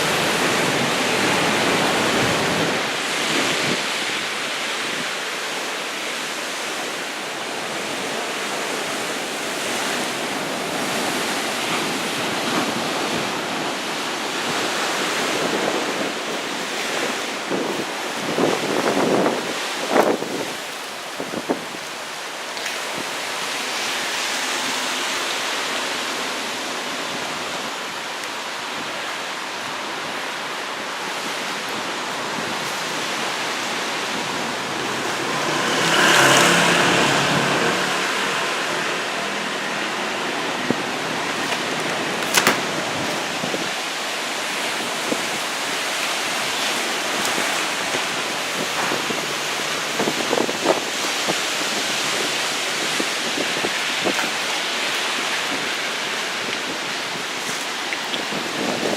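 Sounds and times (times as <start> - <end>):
waves breaking: 0.0 - 58.9
wind: 0.0 - 58.9.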